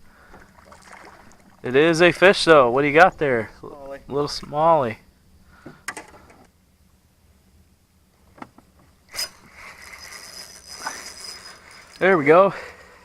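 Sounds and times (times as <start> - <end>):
fishing reel whirring: 9.1 - 13.0.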